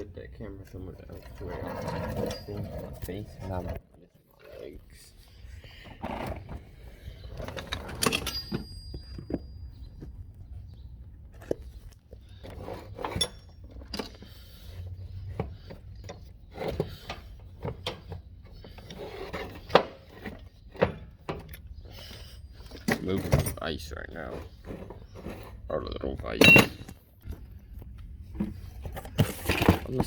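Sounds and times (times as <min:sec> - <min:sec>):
objects knocking and rubbing: 0:28.2 - 0:30.0.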